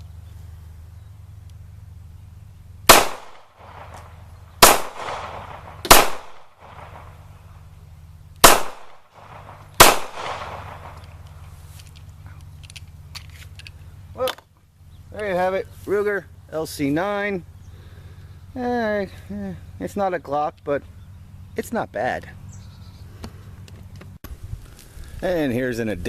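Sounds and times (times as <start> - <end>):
pistol shots with echo: 2.9 - 7.2, 8.4 - 11.0.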